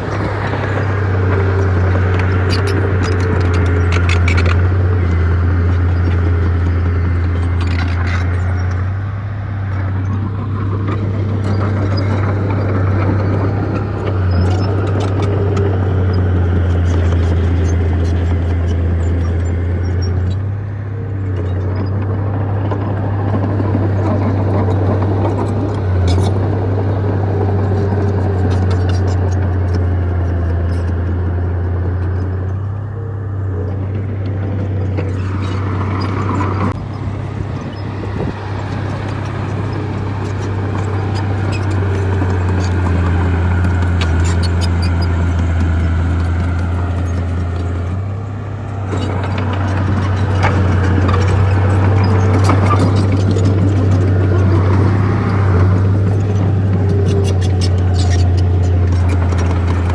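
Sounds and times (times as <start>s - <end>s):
clanks and rattles: 0.0s - 9.0s, 33.6s - 59.9s
bulldozer diesel engine: 0.0s - 59.9s.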